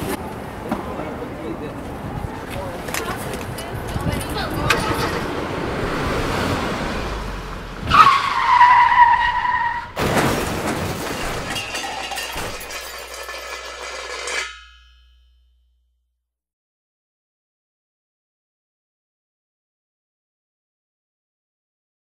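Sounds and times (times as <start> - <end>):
car tyres screeching: 3.8 - 10.0
crash with clattering debris: 9.9 - 14.7.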